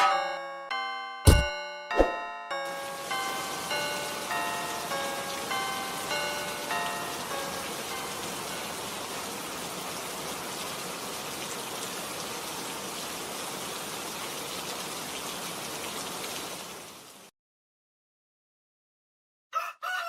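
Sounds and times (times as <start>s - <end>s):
steady rushing hiss: 2.7s - 9.5s.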